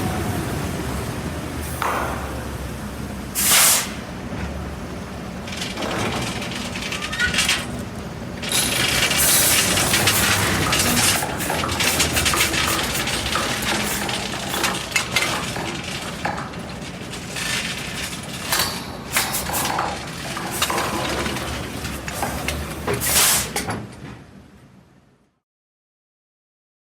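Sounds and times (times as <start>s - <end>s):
heavy engine running: 0.0s - 24.2s
hiss bursts: 3.4s - 4.0s, 23.0s - 23.6s
metallic knocks and clanks: 8.4s - 24.2s.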